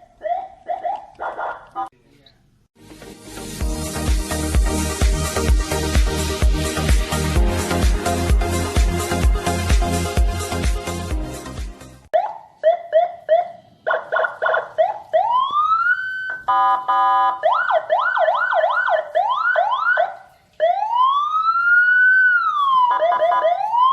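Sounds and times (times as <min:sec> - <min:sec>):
electronic siren: 0:12.2 - 0:23.9.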